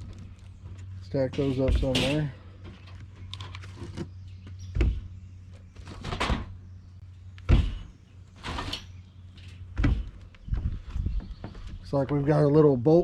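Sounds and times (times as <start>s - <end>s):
wheels thudding down: 1.4s - 6.7s, 7.4s - 11.7s.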